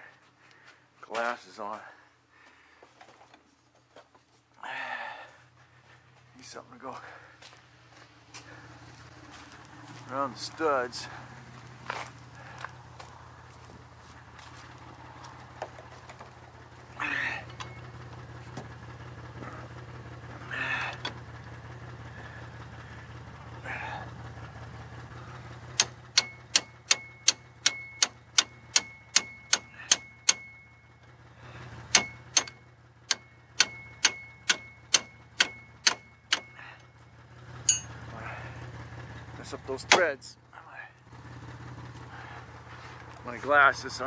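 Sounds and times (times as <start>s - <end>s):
car engine idling: 4.6s - 44.0s
hammer striking metal drum: 31.9s - 36.5s.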